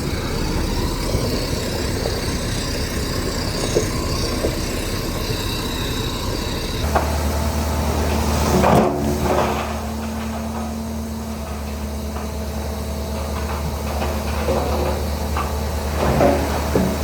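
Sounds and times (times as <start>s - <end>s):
clanking and knocking: 0.0s - 17.0s
heavy machinery engine: 0.0s - 17.0s.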